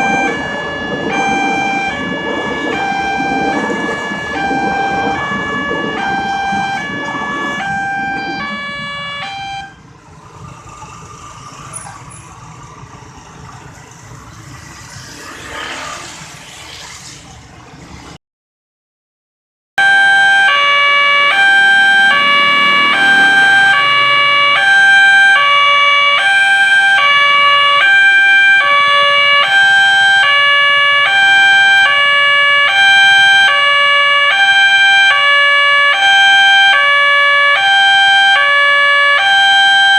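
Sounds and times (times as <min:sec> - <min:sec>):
two-tone level crossing siren: 0:00.0 - 0:10.0, 0:19.8 - 0:39.9
street noise: 0:00.0 - 0:18.2, 0:19.8 - 0:39.9.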